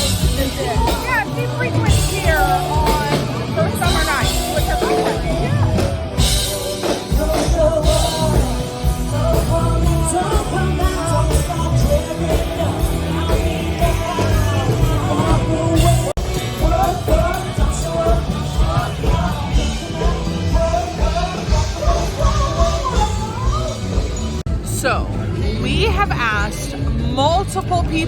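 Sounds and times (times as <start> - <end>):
live rock band with singer: 0.0 - 28.0.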